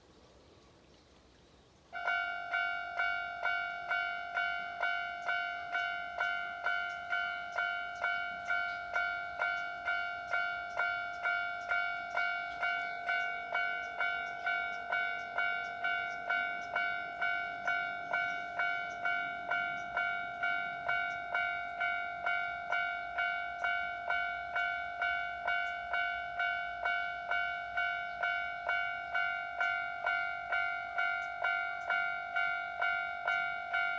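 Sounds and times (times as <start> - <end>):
level crossing warning bell: 2.0 - 33.9.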